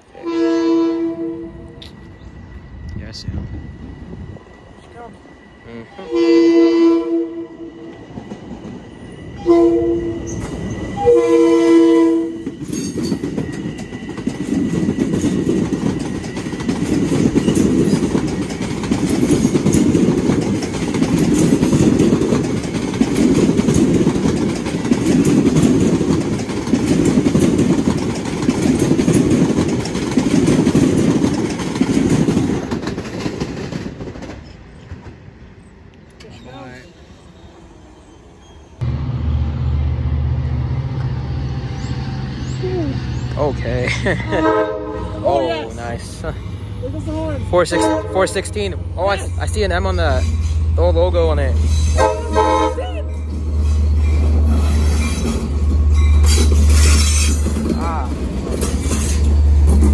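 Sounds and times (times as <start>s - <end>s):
train horn blasts: 0.1s - 1.8s, 5.9s - 7.8s, 9.4s - 10.4s, 11.0s - 12.5s, 44.2s - 45.3s, 47.6s - 48.6s, 51.9s - 53.1s
train wheels rumbling over rail joints: 6.6s - 36.5s, 38.8s - 59.9s.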